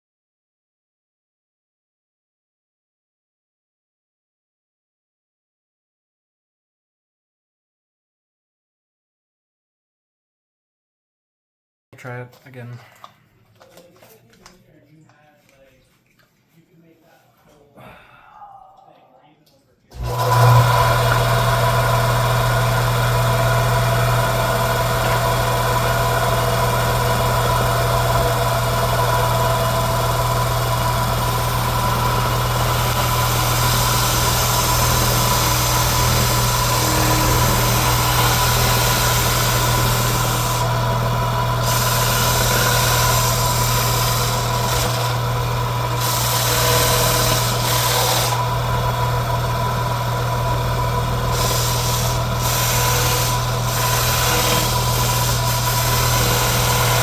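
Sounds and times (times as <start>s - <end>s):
power sander humming: 19.9s - 57.0s.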